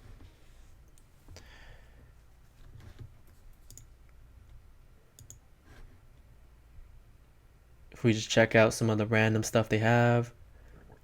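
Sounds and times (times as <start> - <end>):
computer mouse clicks: 2.8 - 4.2, 5.2 - 5.4.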